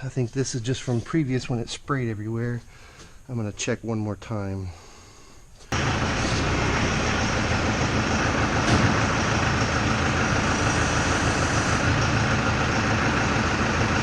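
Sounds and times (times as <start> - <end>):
tractor engine running: 5.7 - 14.0.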